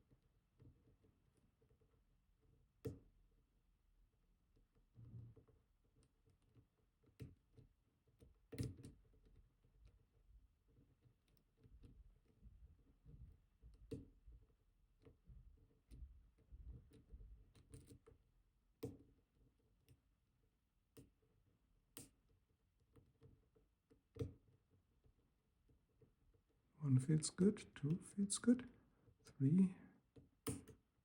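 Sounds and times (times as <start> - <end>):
lock pick clicking and scraping: 16.9 - 18.2.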